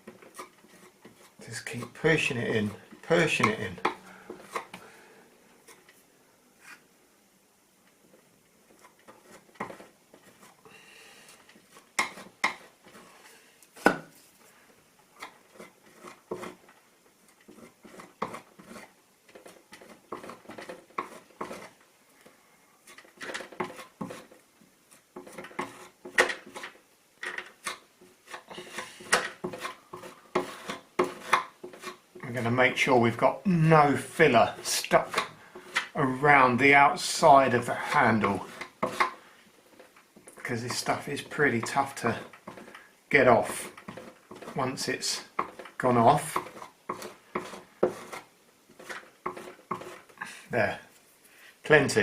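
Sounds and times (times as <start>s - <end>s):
applicator scraping wood filler: 15.2s - 16.7s, 17.3s - 21.8s, 22.8s - 24.4s, 25.1s - 32.6s, 34.1s - 50.2s.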